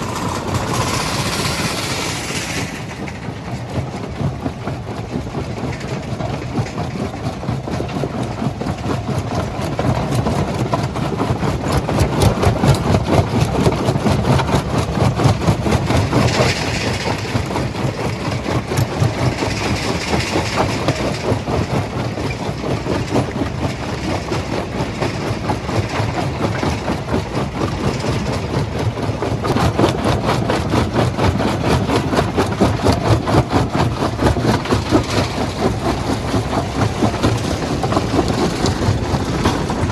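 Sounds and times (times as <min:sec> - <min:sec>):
heavy machinery engine drone: 0:00.0 - 0:39.9.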